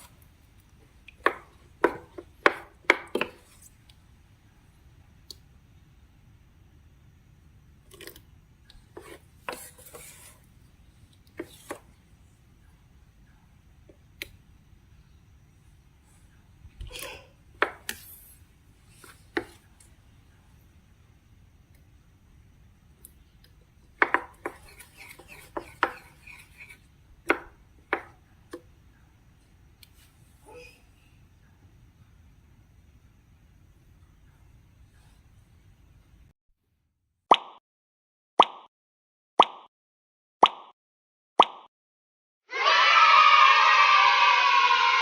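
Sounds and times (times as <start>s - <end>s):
plastic tools tapping and clicking: 24.0s - 26.4s.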